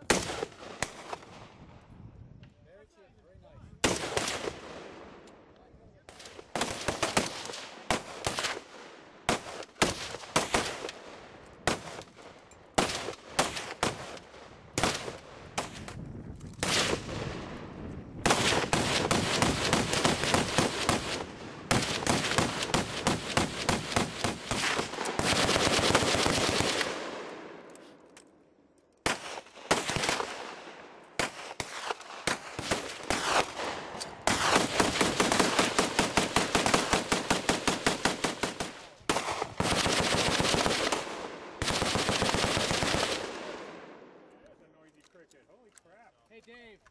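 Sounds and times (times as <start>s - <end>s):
machine gun fire: 18.2s - 27.0s, 34.3s - 43.4s.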